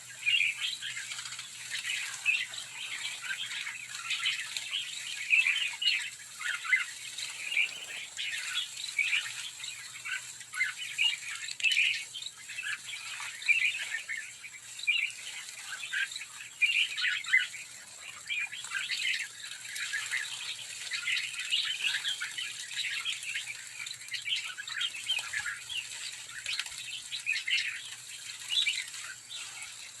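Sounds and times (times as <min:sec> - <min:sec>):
flock of birds chirping: 0:00.2 - 0:10.0
wingbeats fluttering: 0:07.0 - 0:08.5.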